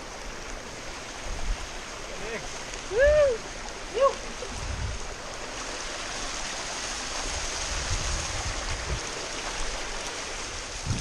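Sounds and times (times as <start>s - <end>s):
rushing water: 0.0s - 11.0s.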